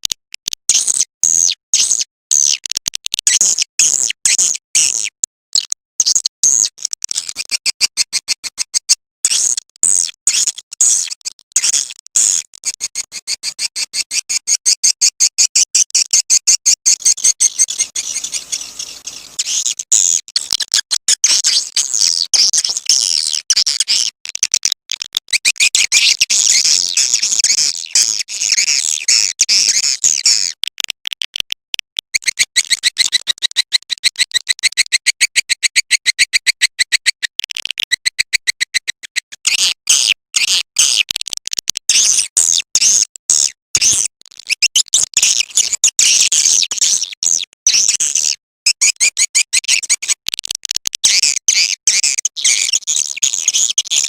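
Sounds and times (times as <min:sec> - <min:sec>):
swiftlet twittering chirps and clicks: 0:00.4 - 0:41.2.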